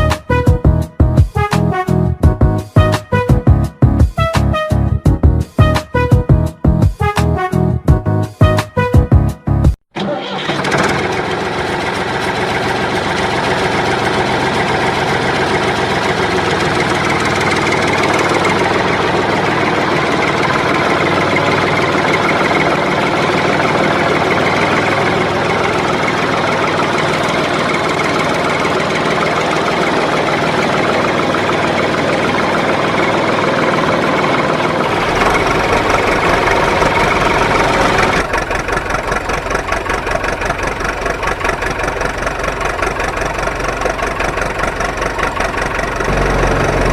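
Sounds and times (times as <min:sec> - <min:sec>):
engine running loudly: 0:10.0 - 0:46.9
fast pulsing rattle: 0:15.3 - 0:46.9
deep hum: 0:34.8 - 0:38.5, 0:44.6 - 0:46.9.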